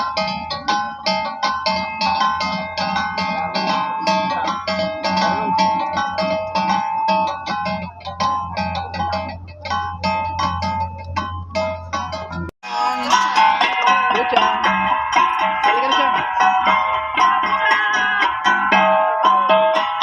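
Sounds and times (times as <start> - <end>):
plucked guitar notes: 0.0 - 20.0
low bass note: 3.0 - 17.1.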